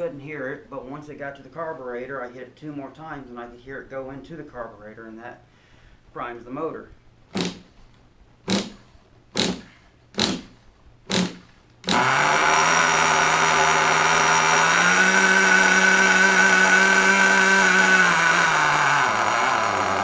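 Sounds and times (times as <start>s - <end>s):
engine being cranked: 11.1s - 20.0s
small engine idling fast: 11.1s - 20.0s.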